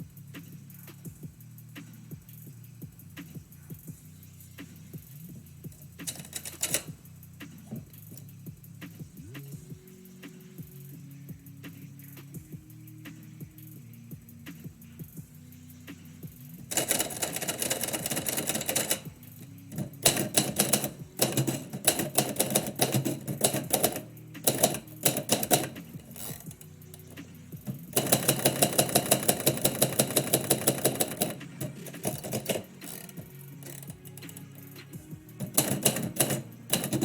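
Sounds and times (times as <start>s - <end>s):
typewriter key strikes: 6.0s - 6.9s, 16.7s - 37.0s.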